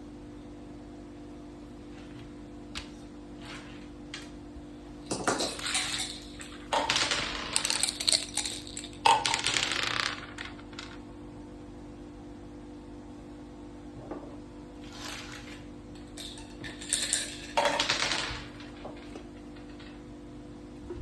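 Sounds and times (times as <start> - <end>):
game pieces and dice clattering: 5.1 - 11.0, 14.8 - 20.0.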